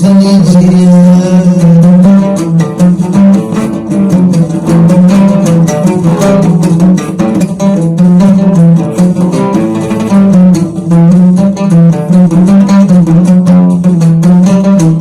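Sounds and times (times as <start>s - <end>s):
song with plucked strings and percussion: 0.0s - 15.0s.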